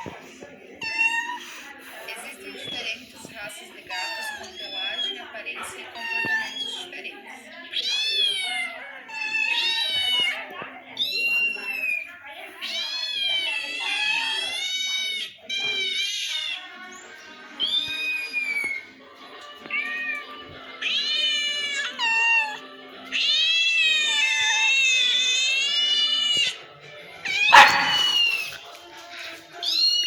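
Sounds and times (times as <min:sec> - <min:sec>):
cat meowing: 0:00.8 - 0:01.6, 0:03.8 - 0:05.2, 0:05.9 - 0:06.8, 0:07.8 - 0:10.4, 0:11.0 - 0:16.8, 0:17.6 - 0:18.8, 0:19.6 - 0:26.6, 0:27.3 - 0:28.6, 0:29.6 - 0:30.0.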